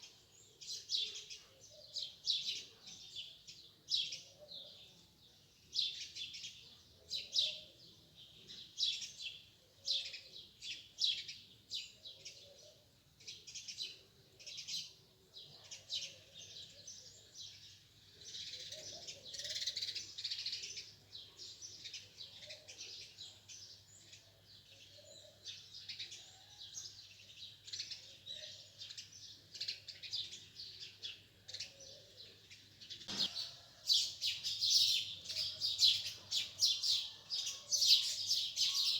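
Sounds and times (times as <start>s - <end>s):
small birds chirping: 0.0s - 38.9s
sharp click: 33.1s - 33.4s.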